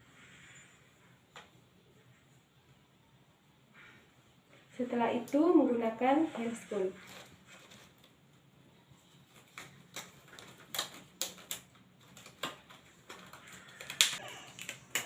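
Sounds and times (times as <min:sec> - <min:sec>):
examination gloves snapping: 0:09.5 - 0:15.0.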